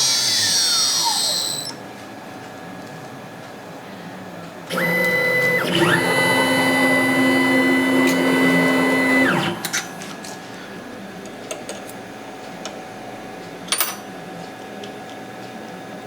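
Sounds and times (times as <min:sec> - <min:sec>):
machine motor whining: 0:00.0 - 0:01.8, 0:04.7 - 0:11.2.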